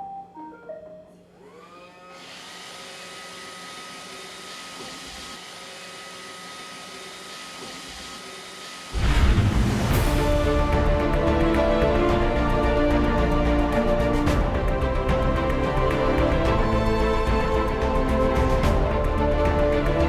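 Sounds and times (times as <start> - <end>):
robot vacuum motor whine: 1.4 - 9.0
loud music: 9.0 - 20.0.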